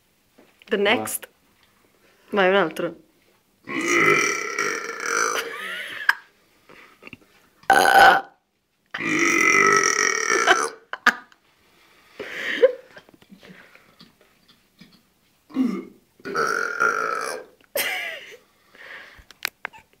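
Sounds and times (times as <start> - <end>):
person burping: 3.7 - 5.8, 7.1 - 8.4, 9.0 - 10.9, 15.5 - 17.6.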